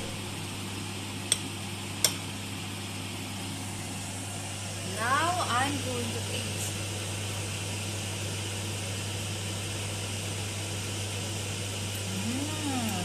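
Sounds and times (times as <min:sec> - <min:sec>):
room noise hum and hiss: 0:00.0 - 0:13.0
person humming mmm: 0:12.0 - 0:13.0.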